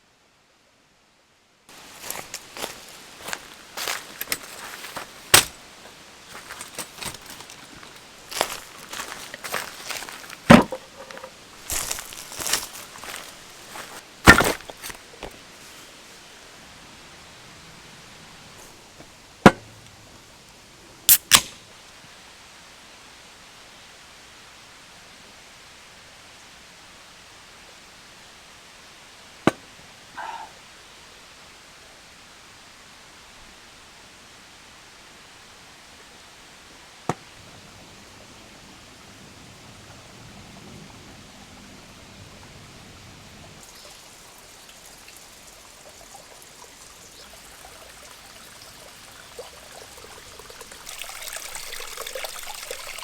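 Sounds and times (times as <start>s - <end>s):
outdoor ambience hiss: 0.0s - 53.0s
sharp knocks: 10.5s - 12.0s.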